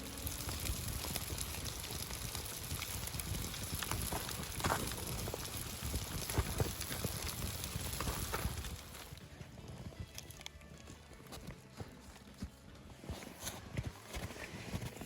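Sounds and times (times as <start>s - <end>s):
steady hiss: 0.0s - 9.2s
campfire crackling and popping: 0.0s - 12.5s.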